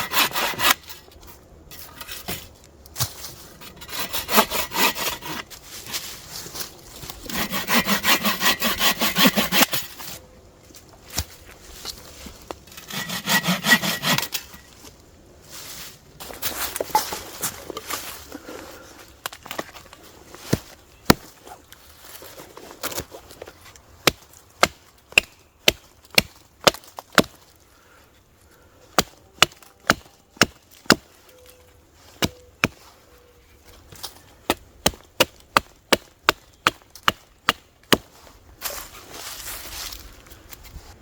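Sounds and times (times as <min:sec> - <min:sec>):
hatchet chopping wood: 0:24.0 - 0:27.4, 0:29.0 - 0:31.1, 0:34.5 - 0:38.1.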